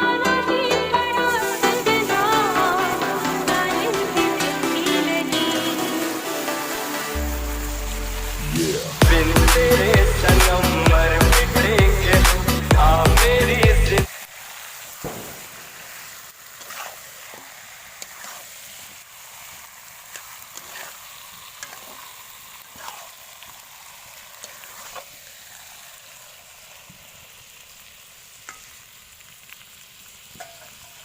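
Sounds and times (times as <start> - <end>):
curry sizzling in a pan: 0.0 - 31.0
spoon scraping and tapping pan: 30.4 - 30.9.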